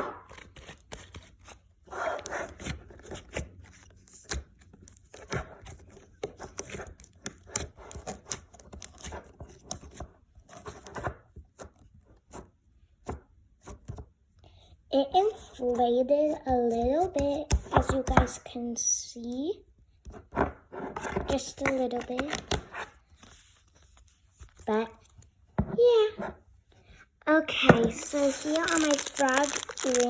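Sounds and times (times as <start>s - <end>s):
slime being squished: 27.7s - 30.0s.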